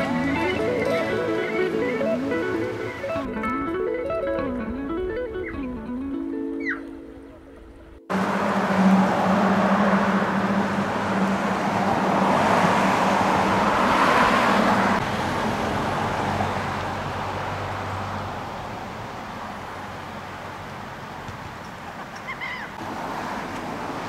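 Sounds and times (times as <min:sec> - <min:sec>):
vehicle driving past: 0:08.1 - 0:18.5.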